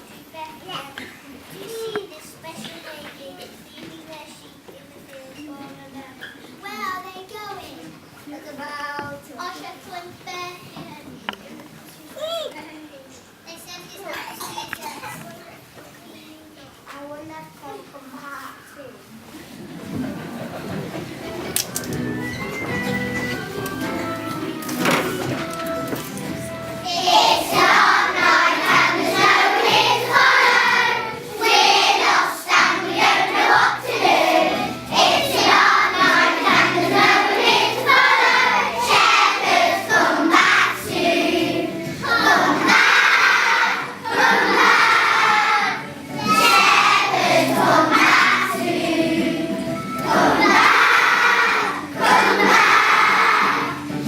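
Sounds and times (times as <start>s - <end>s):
group singing with music: 21.8s - 54.0s.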